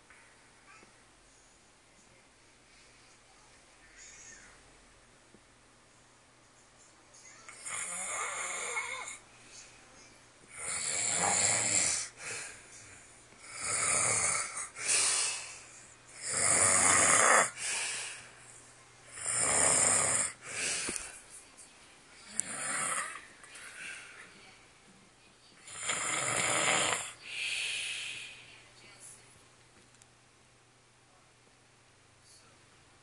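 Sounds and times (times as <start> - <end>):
man snoring: 7.6 - 9.2, 10.5 - 12.4, 13.4 - 15.4, 16.2 - 17.6, 19.1 - 20.7, 22.3 - 23.2, 25.7 - 27.2
quiet breath sound: 17.5 - 18.8, 20.3 - 21.5, 27.1 - 29.3.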